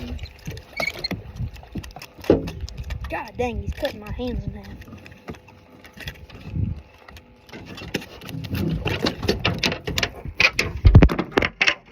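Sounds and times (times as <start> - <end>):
handling clicks and rattling: 0.0 - 11.9.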